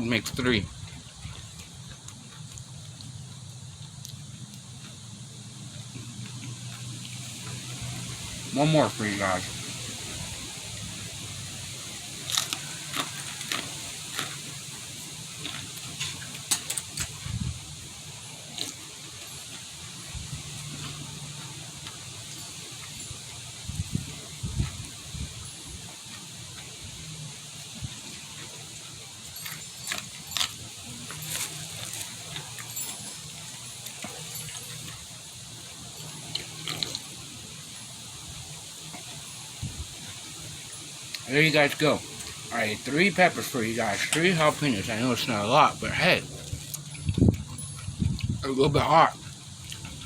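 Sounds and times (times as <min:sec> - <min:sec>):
background hiss: 0:00.0 - 0:50.0
person chewing raw pepper: 0:00.8 - 0:08.4, 0:12.0 - 0:25.0, 0:27.5 - 0:37.3, 0:45.4 - 0:50.0
pepper crunching: 0:12.0 - 0:17.4, 0:18.5 - 0:19.6, 0:29.4 - 0:35.0, 0:41.1 - 0:50.0.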